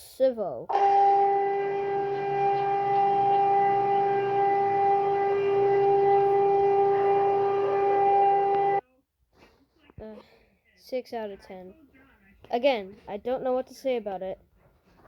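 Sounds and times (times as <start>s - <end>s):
emergency alert alarm tone: 0.7s - 8.8s.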